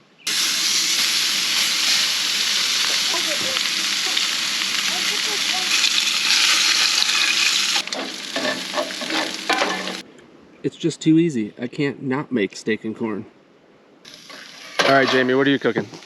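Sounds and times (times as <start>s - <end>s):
steak sizzling in a skillet: 0.3s - 10.0s.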